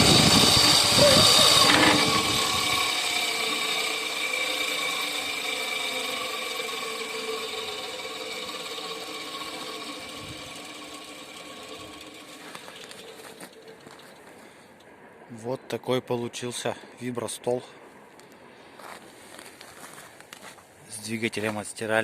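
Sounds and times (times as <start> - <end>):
vibrating table motor humming: 0.0 - 14.4.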